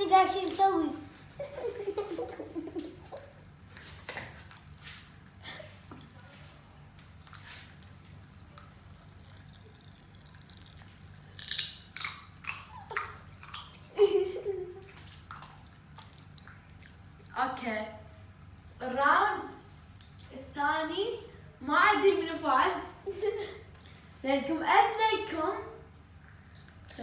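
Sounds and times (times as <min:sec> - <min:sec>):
wet mouth clicks and smacks: 0:07.1 - 0:13.9, 0:25.8 - 0:27.0.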